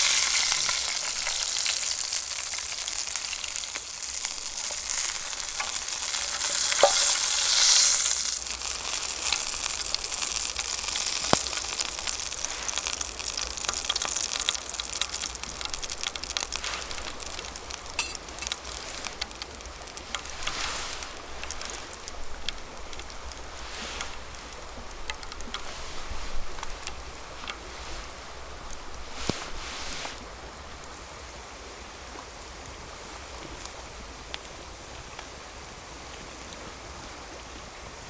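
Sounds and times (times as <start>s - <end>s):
food sizzling in a pan: 0.0s - 24.8s
fire crackles: 0.0s - 38.0s
sharp ticks: 8.4s - 20.6s.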